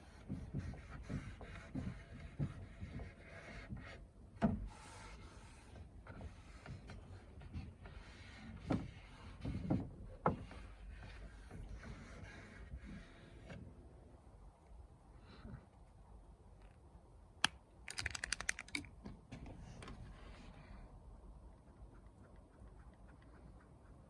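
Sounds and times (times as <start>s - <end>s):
wood knocking and rubbing: 0.1s - 4.7s, 6.1s - 13.6s.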